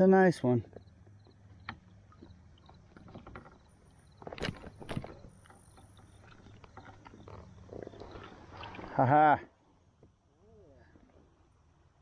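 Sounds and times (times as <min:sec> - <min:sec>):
small water splashes: 0:02.0 - 0:09.2.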